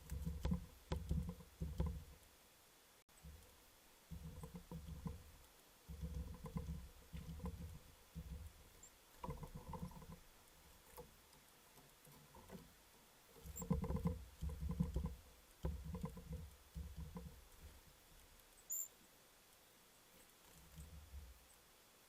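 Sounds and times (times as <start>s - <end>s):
bird pecking at feeder: 0.0s - 2.2s, 3.2s - 18.8s
bird squeak: 18.7s - 19.0s.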